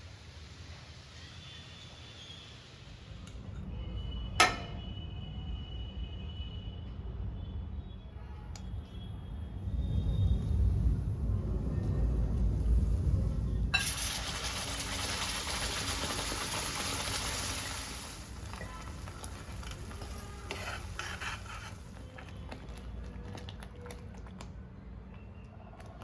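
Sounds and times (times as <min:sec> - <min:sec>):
food sizzling in hot oil: 0:13.7 - 0:22.0
spoon stirring and scraping pan: 0:18.4 - 0:23.4.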